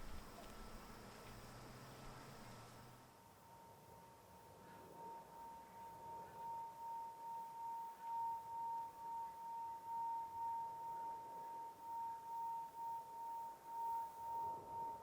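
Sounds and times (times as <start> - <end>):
pulsing pure tone: 3.4 - 15.0.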